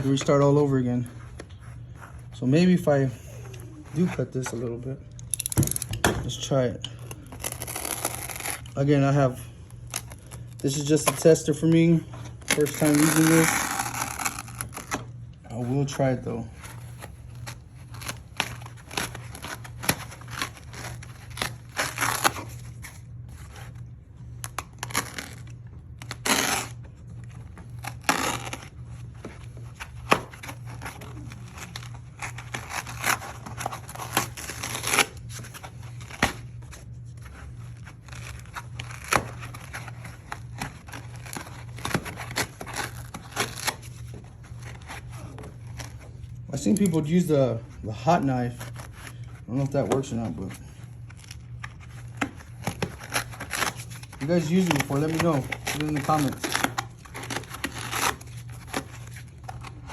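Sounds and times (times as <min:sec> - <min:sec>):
steady low hum: 0:00.0 - 0:59.9
foam being cut and torn: 0:07.3 - 0:08.8, 0:12.5 - 0:15.0, 0:51.2 - 0:59.9.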